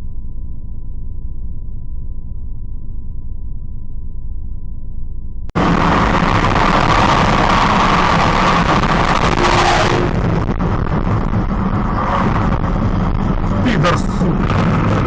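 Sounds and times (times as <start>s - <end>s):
car road and engine noise: 5.5s - 15.0s.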